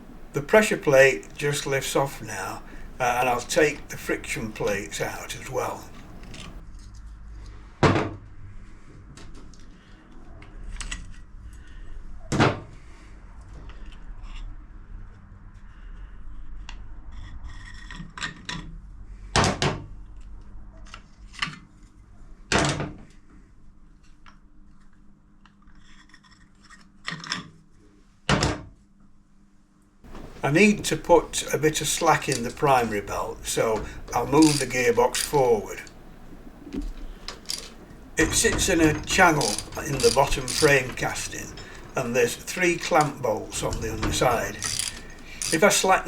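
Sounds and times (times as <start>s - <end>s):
soft rubbing and handling: 0.0s - 6.6s, 30.1s - 46.0s
metal clutch plates knocking: 36.8s - 45.8s.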